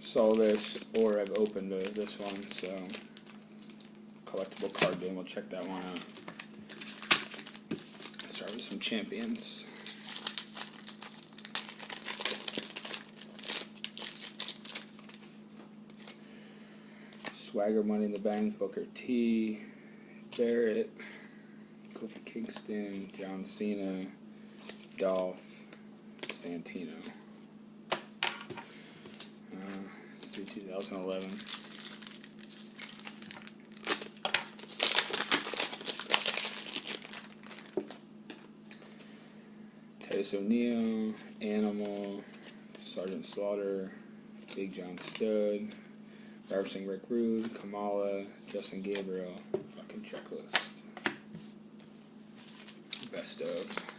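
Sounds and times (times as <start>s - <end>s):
wrapper crinkling and tearing: 0.1s - 15.3s, 29.1s - 38.8s, 52.4s - 53.9s.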